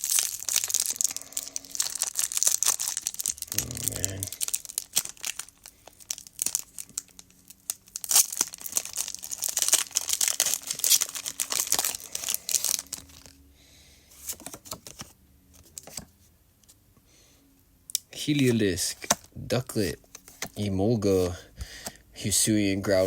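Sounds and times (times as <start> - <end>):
foil wrapper tearing and crinkling: 0.0 - 13.4.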